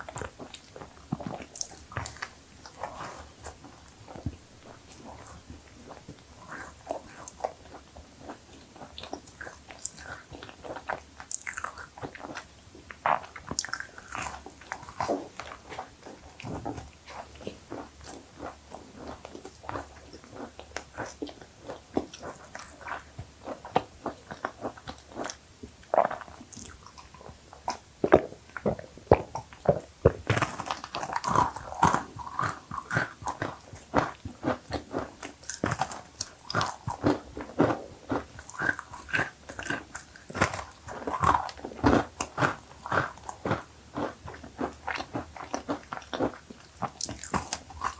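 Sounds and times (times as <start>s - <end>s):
cookie crunching: 26.0s - 47.9s.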